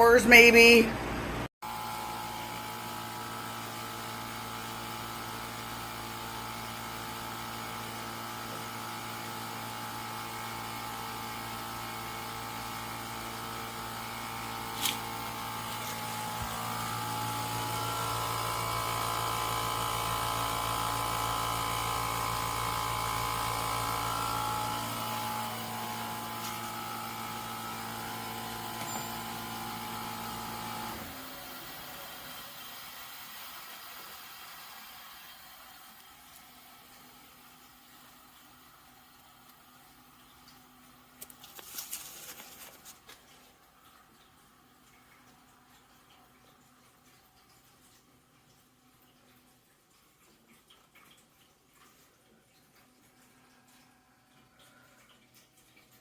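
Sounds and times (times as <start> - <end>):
air conditioner humming: 0.0 - 2.8.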